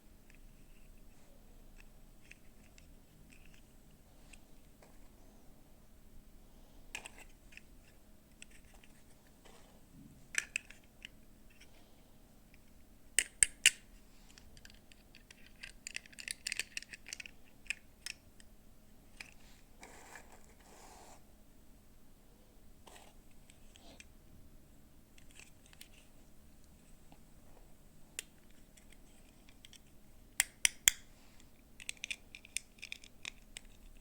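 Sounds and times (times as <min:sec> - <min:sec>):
plastic toy pieces clicking: 0:14.6 - 0:18.2, 0:31.8 - 0:34.0.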